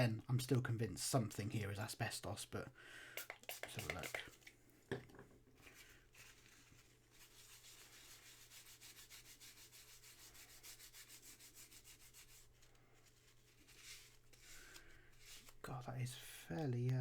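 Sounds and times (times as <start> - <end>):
quick rubbing strokes: 3.2 - 4.4, 6.2 - 15.6.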